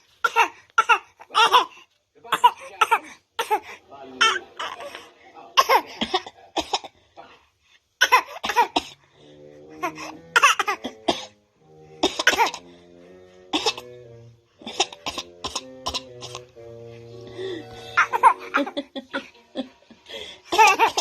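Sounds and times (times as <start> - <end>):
background music with held notes: 2.2 - 6.6, 8.0 - 21.0
person coughing: 8.0 - 9.0, 10.4 - 11.4, 12.0 - 12.6, 13.6 - 13.9, 14.6 - 16.4
person laughing: 17.4 - 21.0.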